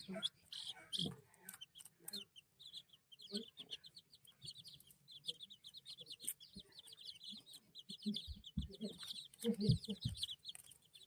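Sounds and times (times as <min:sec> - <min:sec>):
baby chicks peeping: 0:00.0 - 0:11.0.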